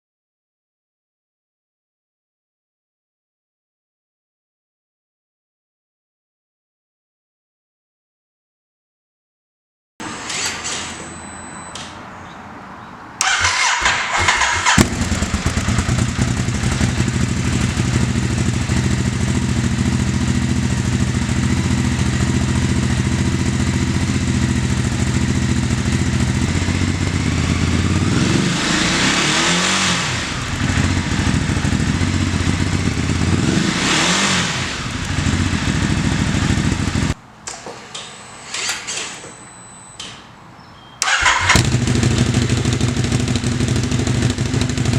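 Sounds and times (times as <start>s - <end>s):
starter cranking: 13.2s - 16.1s
throttle blips revving engine: 13.2s - 37.2s, 41.0s - 44.9s
motorcycle engine idling: 13.4s - 28.8s, 30.2s - 37.2s, 41.2s - 44.9s.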